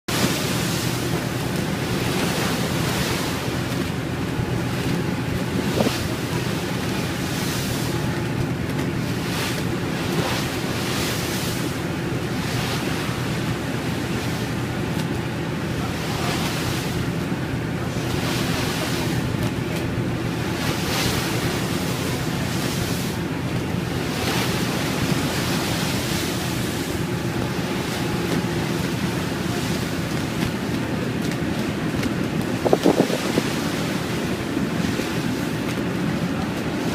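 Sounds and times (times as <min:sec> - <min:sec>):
waves rushing against hull: 0:00.0 - 0:36.9
ship engines running: 0:00.1 - 0:36.9
wind buffeting microphone: 0:00.1 - 0:36.9
wind on microphone: 0:04.4 - 0:11.7, 0:32.2 - 0:36.2.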